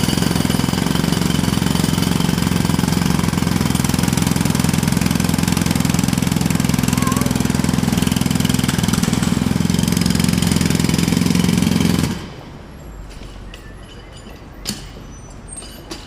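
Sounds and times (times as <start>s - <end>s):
jackhammer hammering: 0.0s - 12.6s.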